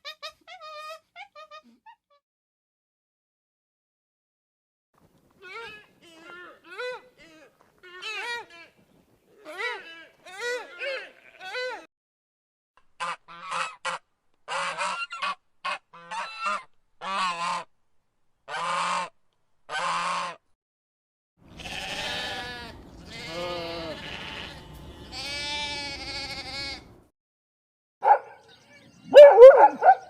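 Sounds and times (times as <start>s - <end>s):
farm animals calling: 21.4s - 27.0s, 28.0s - 30.0s.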